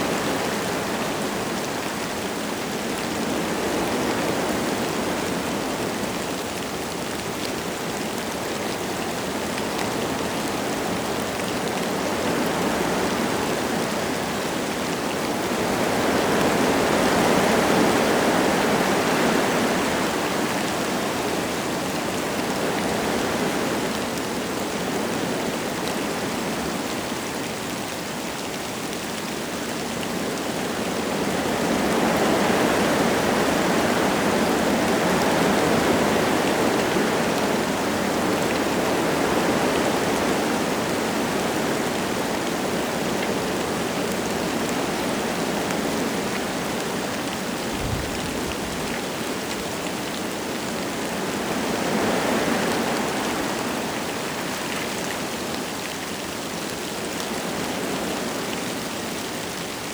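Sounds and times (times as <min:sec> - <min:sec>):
light rain: 0:00.0 - 0:59.9
wind gusts through trees: 0:00.0 - 0:59.9.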